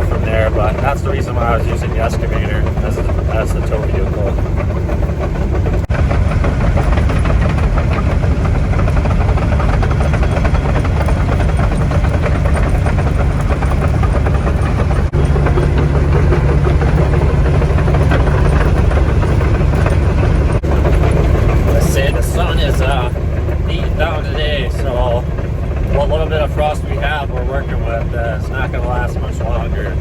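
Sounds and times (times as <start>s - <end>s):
diesel engine running: 0.0s - 30.0s.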